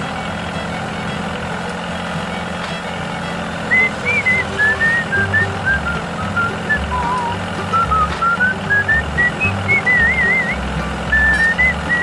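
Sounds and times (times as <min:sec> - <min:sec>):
vehicle engine hum: 0:00.0 - 0:12.0
whistled melody music: 0:02.7 - 0:12.0
pulsing bass line: 0:03.8 - 0:12.0.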